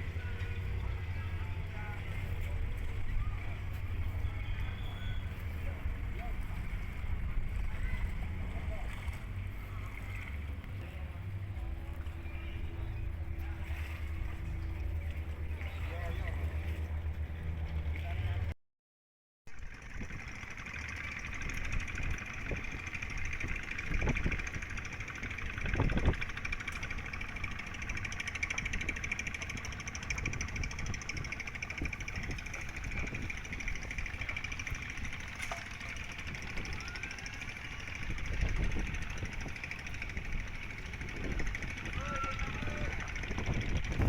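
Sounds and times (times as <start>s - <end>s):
engine knocking steadily: 0.0s - 18.5s, 19.5s - 44.0s.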